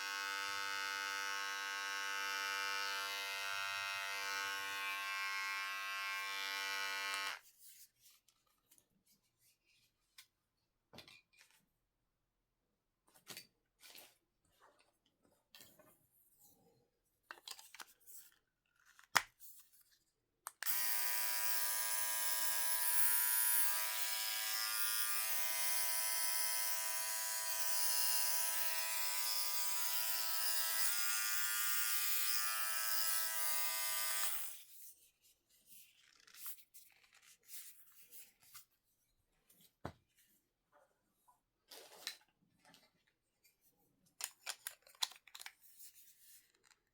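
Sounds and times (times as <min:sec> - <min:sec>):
hair trimmer buzzing: 0:00.0 - 0:07.4, 0:20.6 - 0:34.6.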